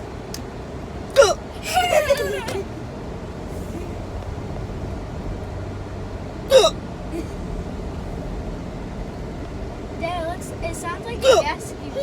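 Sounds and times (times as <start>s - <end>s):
low background hum: 0.0s - 12.0s
person hiccuping: 1.2s - 1.4s, 6.5s - 6.8s, 11.2s - 11.5s.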